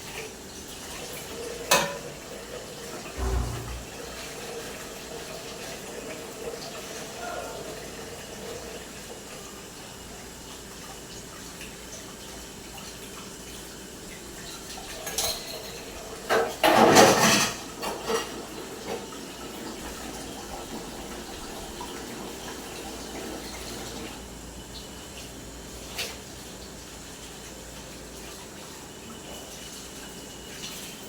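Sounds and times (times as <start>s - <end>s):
loud gush of water: 2.8s - 10.0s
dishes clinking: 3.2s - 4.0s.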